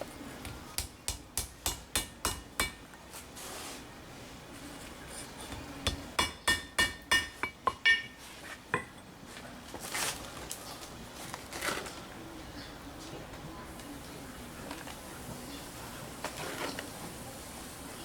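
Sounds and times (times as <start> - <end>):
hammer striking steel on anvil: 0.4 - 2.8, 5.5 - 9.0.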